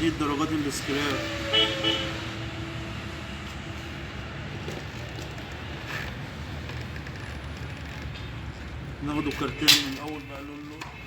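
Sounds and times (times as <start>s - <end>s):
street traffic rumble: 0.0s - 11.0s.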